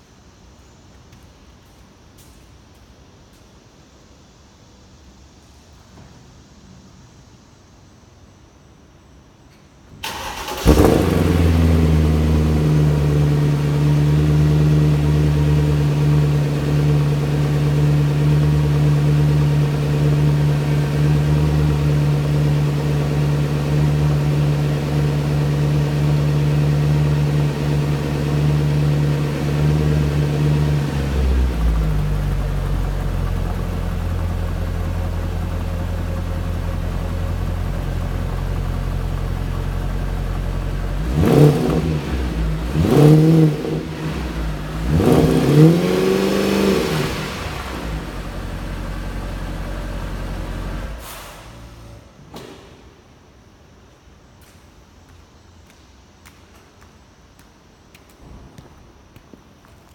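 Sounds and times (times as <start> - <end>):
car engine revving and idling: 10.1 - 52.0.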